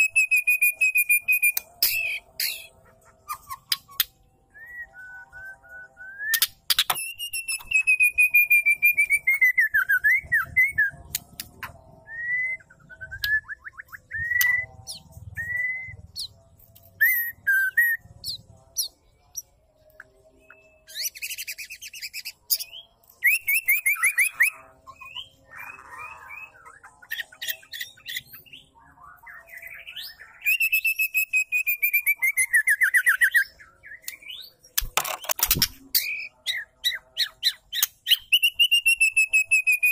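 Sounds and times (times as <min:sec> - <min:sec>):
bird singing whistled phrases: 0:03.3 - 0:10.9, 0:12.0 - 0:16.3, 0:17.0 - 0:18.0, 0:20.4 - 0:34.5, 0:36.0 - 0:39.9.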